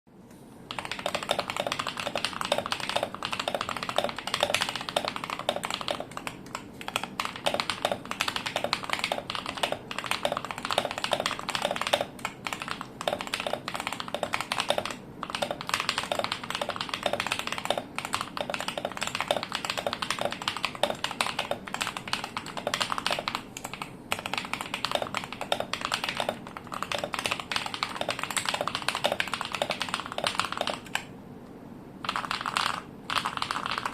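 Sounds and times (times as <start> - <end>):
mechanical keyboard typing: 0.7 - 31.1, 32.0 - 33.9.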